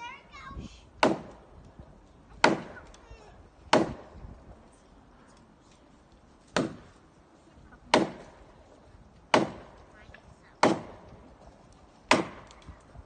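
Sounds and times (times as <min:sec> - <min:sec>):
axe chopping into tree trunk: 0:01.0 - 0:01.4, 0:02.4 - 0:02.8, 0:03.7 - 0:04.1, 0:06.5 - 0:06.9, 0:07.9 - 0:08.3, 0:09.3 - 0:09.7, 0:10.6 - 0:11.0, 0:12.1 - 0:12.6.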